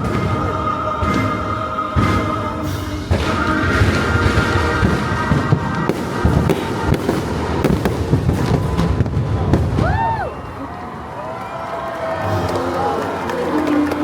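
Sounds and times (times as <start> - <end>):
fireworks bangs: 0.0 - 10.9
music soundtrack: 0.0 - 14.0.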